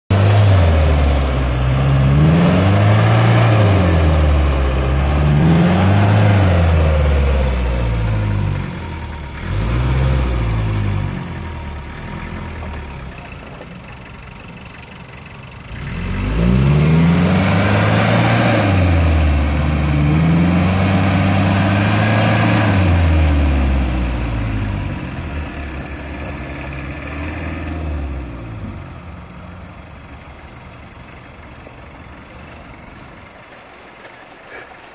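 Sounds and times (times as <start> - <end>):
engine revving: 0.0 - 13.2, 15.6 - 29.1.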